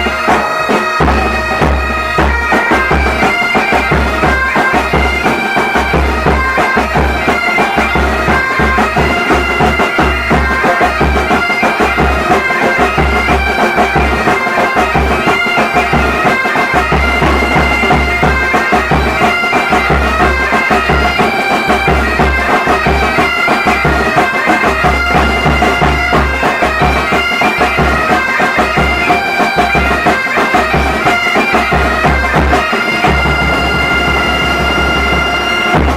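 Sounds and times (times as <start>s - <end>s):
bagpipes playing a tune: 0.0s - 35.9s
drum beating a regular rhythm: 0.0s - 35.9s.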